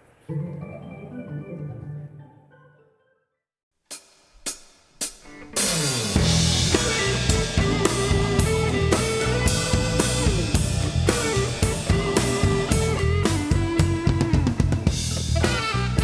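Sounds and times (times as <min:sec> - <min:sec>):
rock band playing: 0:05.0 - 0:16.0.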